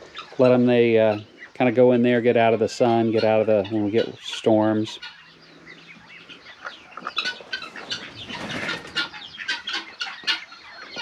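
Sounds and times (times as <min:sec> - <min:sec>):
bird chirps and calls: 0:00.0 - 0:11.0
birds flapping wings: 0:07.7 - 0:09.2.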